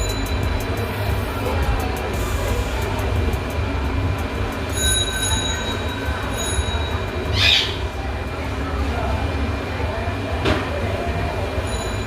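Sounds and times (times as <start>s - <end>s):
thin high tone: 0.0s - 1.1s, 4.7s - 7.8s, 11.6s - 12.0s
hot-air station blowing: 0.0s - 12.0s.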